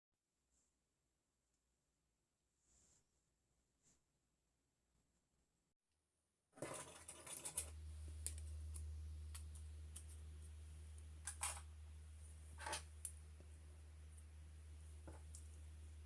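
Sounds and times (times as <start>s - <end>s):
steady low hum: 6.8s - 16.0s.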